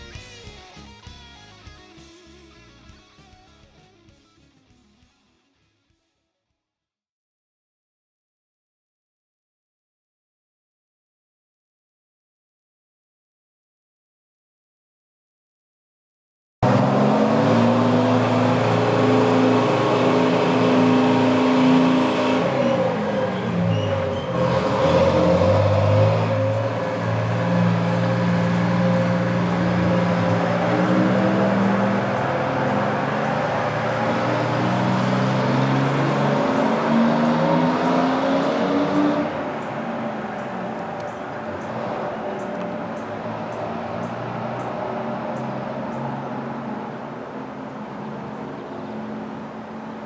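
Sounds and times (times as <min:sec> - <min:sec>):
fire truck engine running: 0:16.6 - 0:50.0.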